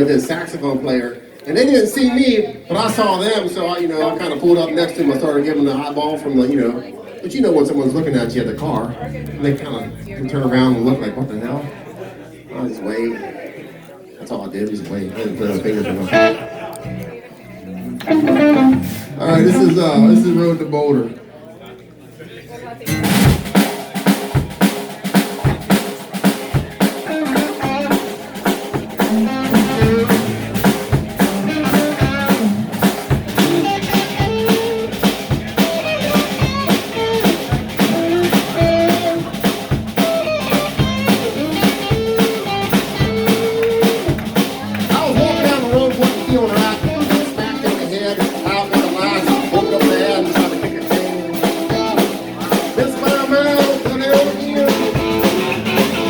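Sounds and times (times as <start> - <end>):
live rock band playing: 8.0 - 10.6, 16.0 - 20.7, 22.8 - 56.0
drum kit beat: 16.1 - 17.0, 17.8 - 20.5, 22.9 - 56.0.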